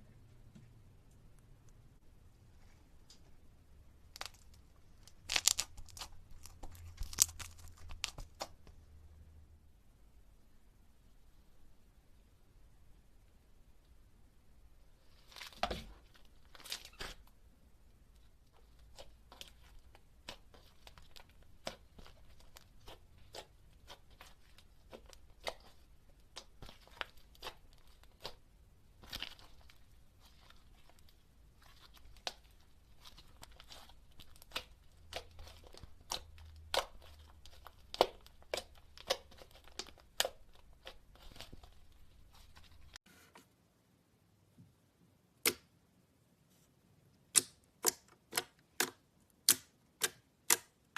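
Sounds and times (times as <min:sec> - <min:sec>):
slime squeezed by hand: 0:04.1 - 0:08.6.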